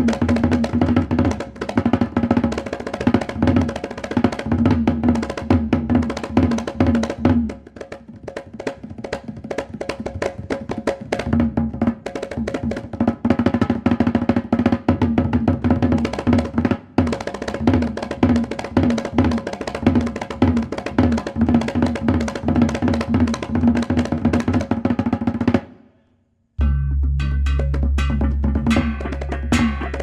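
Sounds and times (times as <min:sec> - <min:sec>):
drums: 0:00.0 - 0:25.8, 0:26.6 - 0:30.0
cymbals clashing: 0:26.6 - 0:30.0
gong-chime notes: 0:26.6 - 0:30.0.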